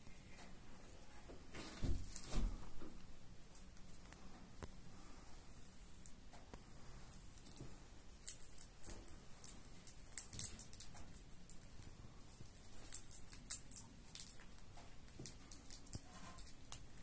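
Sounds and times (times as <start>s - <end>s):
parrot cracking seed shells: 8.2s - 17.0s.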